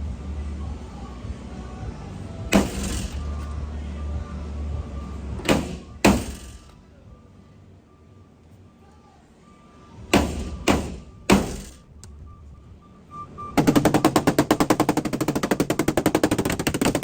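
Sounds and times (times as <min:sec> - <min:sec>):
sharp metal impacts: 0:02.5 - 0:03.4, 0:05.4 - 0:06.8, 0:10.1 - 0:12.0, 0:13.6 - 0:17.0.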